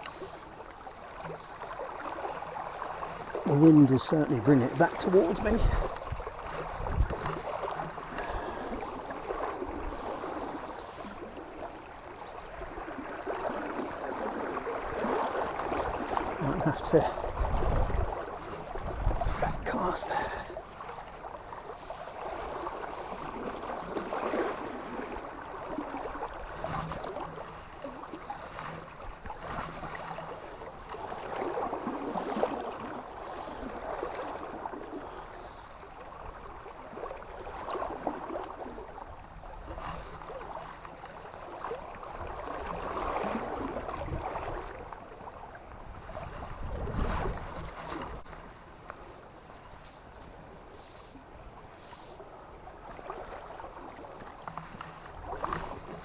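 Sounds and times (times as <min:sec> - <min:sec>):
river water rushing and splashing: 0:00.0 - 0:56.0.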